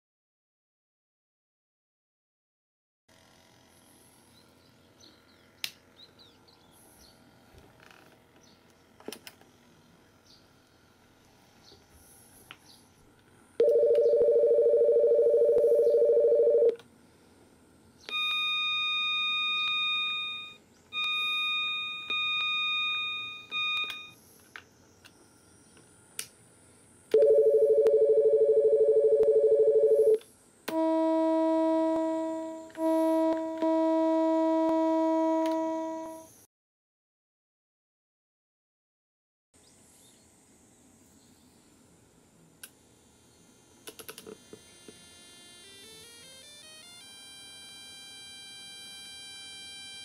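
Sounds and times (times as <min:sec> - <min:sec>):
electronic buzzer tone: 0:18.1 - 0:24.2, 0:30.0 - 0:36.3, 0:44.4 - 0:50.0
electronic chime tones: 0:18.1 - 0:24.2
low electronic tones: 0:30.7 - 0:36.3.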